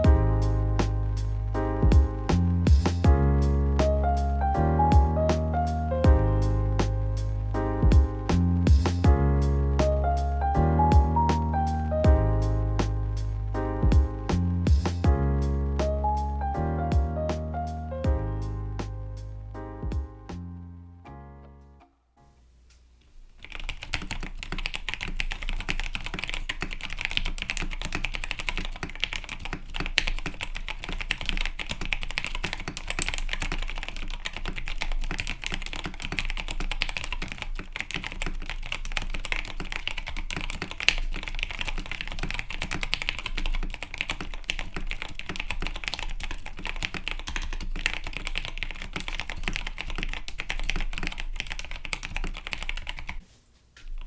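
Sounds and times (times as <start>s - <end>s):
fast mechanical keyboard typing: 23.4s - 53.2s.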